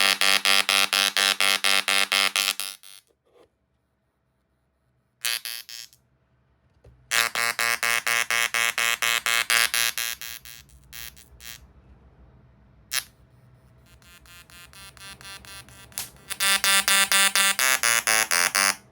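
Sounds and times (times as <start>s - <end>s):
tesla coil spark buzzing: 0.0s - 3.0s, 5.2s - 6.0s, 7.1s - 11.6s, 12.9s - 13.1s, 13.8s - 18.9s.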